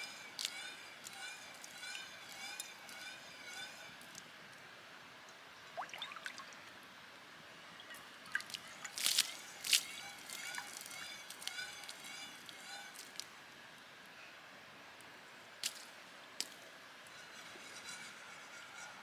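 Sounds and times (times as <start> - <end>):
water sloshing in a pan: 5.3 - 7.0.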